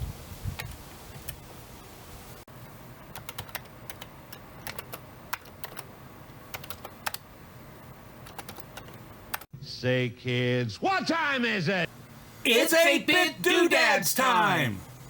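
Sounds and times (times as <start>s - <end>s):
keyboard typing: 3.0s - 5.9s, 6.5s - 7.2s, 8.2s - 9.5s.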